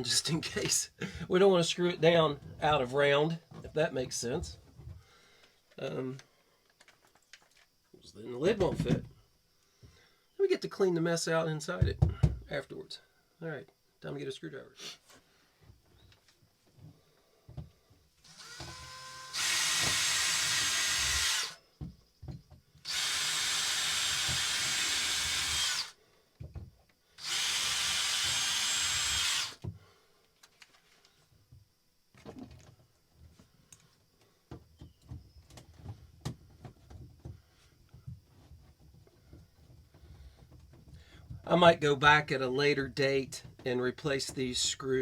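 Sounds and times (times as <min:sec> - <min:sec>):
faint clicks and handling noise: 0:05.4 - 0:07.7, 0:30.2 - 0:31.3, 0:32.2 - 0:34.4
power drill driving screws: 0:18.2 - 0:21.6, 0:22.8 - 0:26.0, 0:27.2 - 0:29.6.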